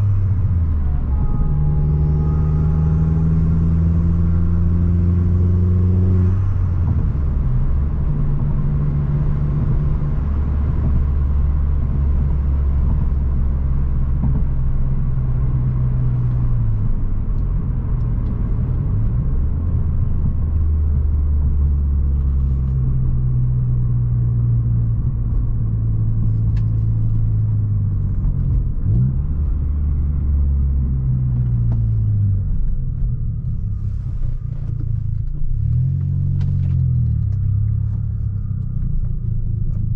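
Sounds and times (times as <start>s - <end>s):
car engine running: 0.0s - 39.9s.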